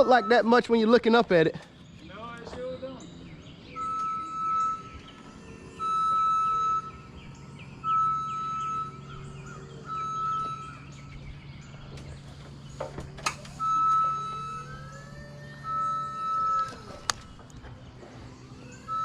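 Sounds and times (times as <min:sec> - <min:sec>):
birds chirping: 0:00.0 - 0:19.0
machine warning beeper: 0:00.0 - 0:19.0
steady low hum: 0:00.0 - 0:19.0
sharp clicks: 0:16.5 - 0:17.7.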